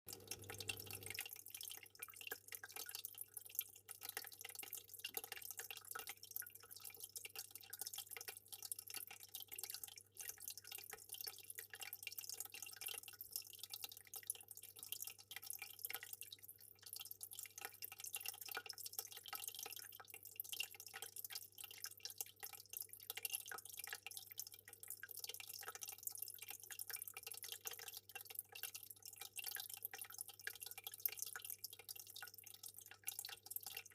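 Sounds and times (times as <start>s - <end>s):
fish tank water bubbling: 0.1s - 1.2s.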